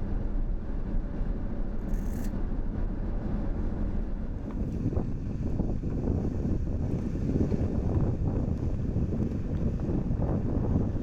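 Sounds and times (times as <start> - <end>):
strong wind on microphone: 4.2 - 11.0.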